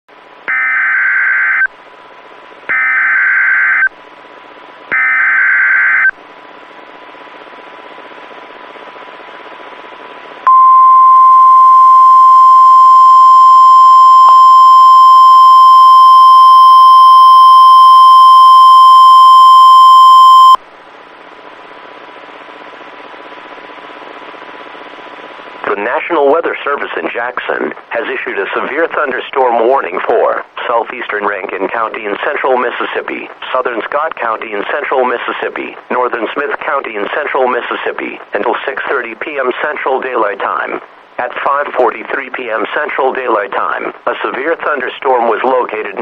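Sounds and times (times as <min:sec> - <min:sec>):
radio static: 0:10.5 - 0:20.6, 0:25.6 - 0:46.0
radio hiss: 0:25.5 - 0:46.0.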